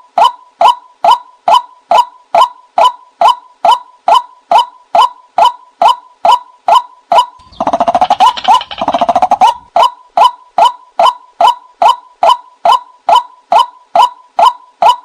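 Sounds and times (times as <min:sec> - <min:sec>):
rapid chattering bird call: 0:07.4 - 0:10.7.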